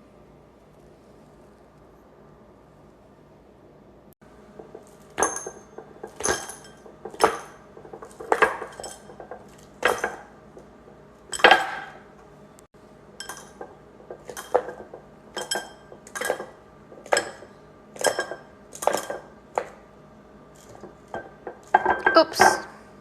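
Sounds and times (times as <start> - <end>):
hard objects clinking: 4.6 - 10.3, 11.3 - 12.0, 13.2 - 19.8.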